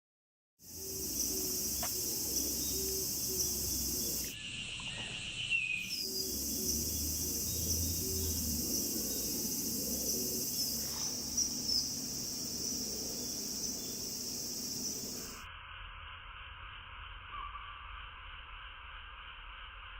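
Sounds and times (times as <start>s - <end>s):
high-pitched insect chorus: 0.6s - 15.5s
lower buzzing: 0.7s - 4.3s, 6.0s - 15.5s.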